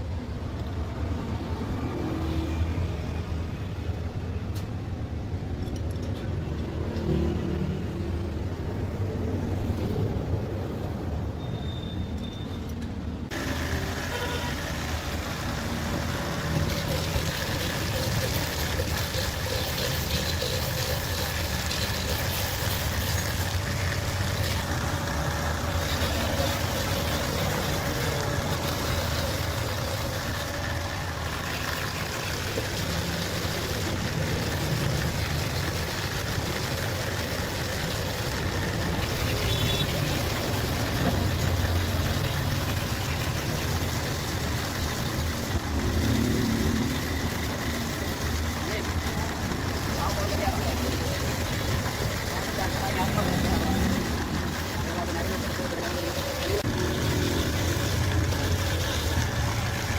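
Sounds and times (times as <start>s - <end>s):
mechanical hum: 13.0s - 59.9s.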